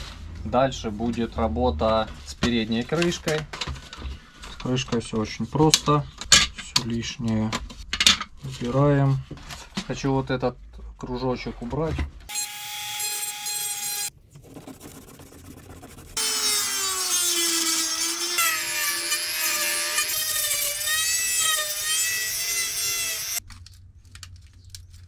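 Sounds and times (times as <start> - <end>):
rotary engraver whining: 16.2 - 23.4.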